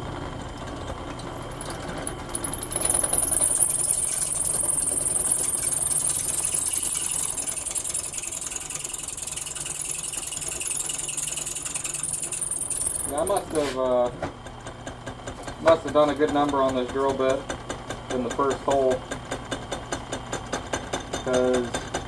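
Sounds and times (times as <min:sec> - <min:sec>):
drill press motor hum: 0:01.4 - 0:13.6
drill bit squealing in steel: 0:01.5 - 0:13.6.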